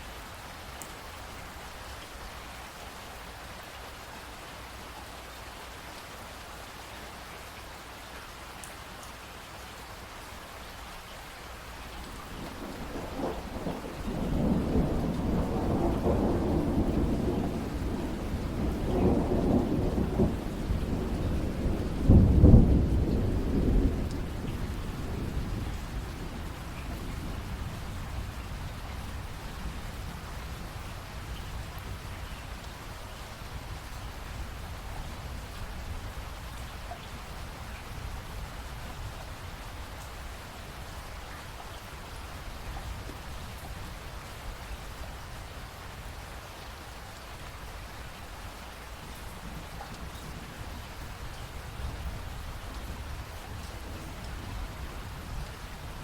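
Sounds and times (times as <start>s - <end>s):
steady rain falling: 0.0s - 56.0s
thunder rolling: 12.3s - 27.5s.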